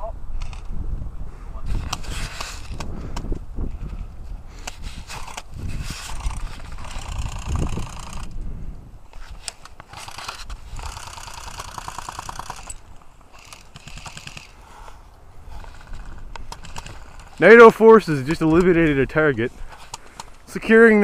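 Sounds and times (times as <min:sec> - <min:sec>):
airsoft gun automatic fire: 0:09.9 - 0:12.7, 0:13.4 - 0:14.6.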